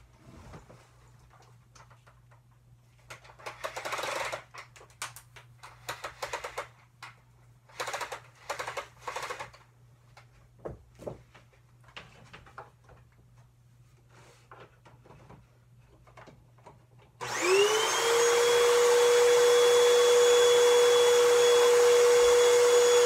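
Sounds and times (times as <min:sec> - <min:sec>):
vacuum cleaner humming: 0:17.2 - 0:23.0.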